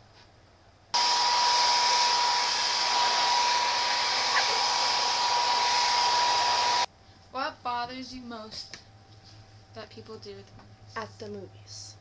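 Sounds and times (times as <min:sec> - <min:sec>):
high whine: 0:01.0 - 0:06.9
loud steady hiss: 0:01.0 - 0:06.9.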